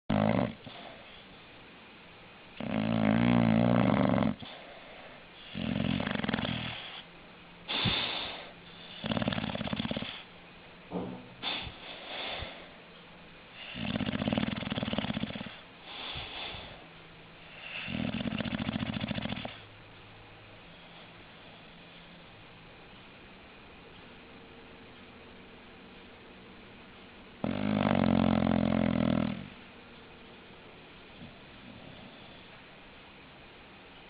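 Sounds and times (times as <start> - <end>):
dog snoring: 0.1 - 1.1, 2.6 - 4.7, 5.4 - 7.1, 7.7 - 10.3, 13.5 - 16.8, 17.4 - 19.6, 27.4 - 29.6, 31.1 - 32.6
dog breathing softly: 13.6 - 19.7.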